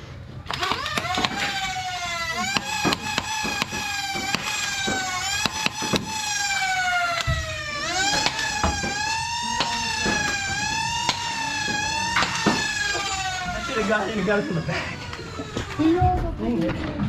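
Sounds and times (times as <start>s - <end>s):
darts firing and hitting: 0.5s - 1.7s, 2.3s - 13.2s
flywheels spinning with high whine: 0.5s - 16.6s.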